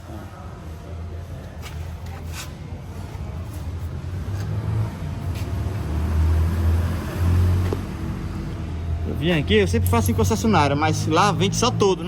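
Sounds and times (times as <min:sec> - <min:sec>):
engine rumbling: 0:03.0 - 0:12.0.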